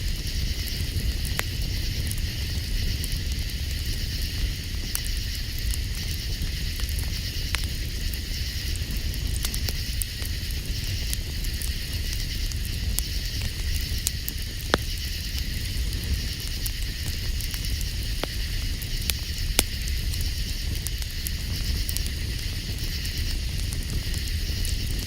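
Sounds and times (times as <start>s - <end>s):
campfire crackling and popping: 0.0s - 25.0s
night insects chirping: 0.0s - 25.0s.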